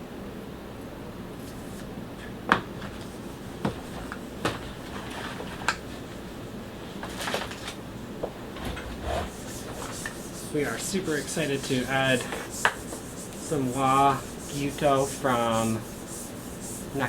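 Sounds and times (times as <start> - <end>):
low room hum: 0.0 - 17.0
soft rustling: 8.9 - 17.0.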